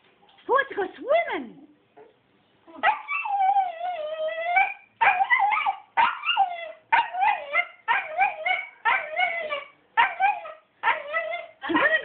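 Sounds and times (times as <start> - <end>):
dog whining calls: 2.0 - 11.6
dog howling whine: 3.0 - 11.5.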